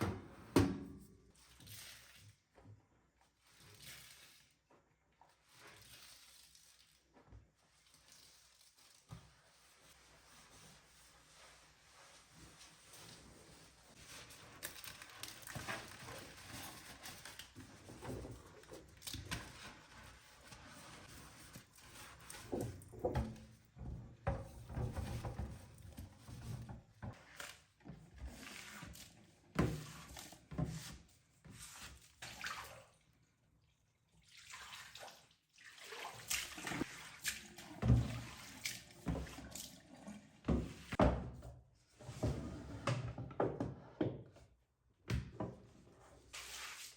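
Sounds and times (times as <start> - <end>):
water running and splashing: 34.3 - 40.8.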